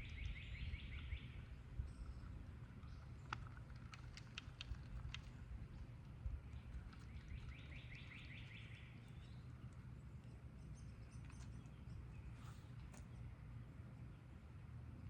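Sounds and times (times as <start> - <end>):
songbird trilling: 0.0 - 2.2, 7.2 - 9.5.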